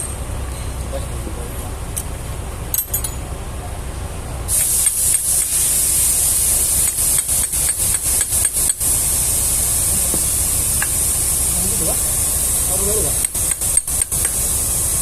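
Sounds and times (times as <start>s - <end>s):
pressurised spray hissing: 4.5s - 15.0s.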